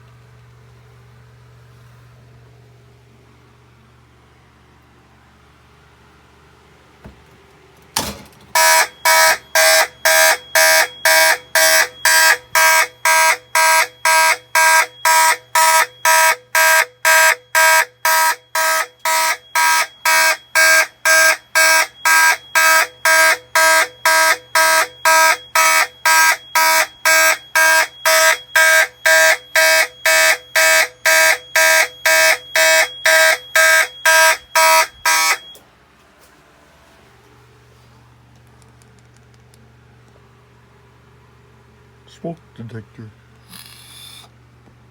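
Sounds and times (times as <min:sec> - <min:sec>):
fire alarm horns pulsing: 0:08.5 - 0:35.6.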